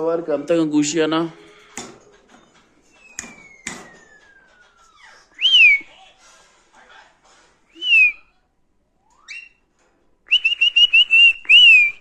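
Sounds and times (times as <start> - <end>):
whistled notes: 2.9 - 5.9, 7.7 - 8.4, 9.0 - 9.7, 10.3 - 12.0.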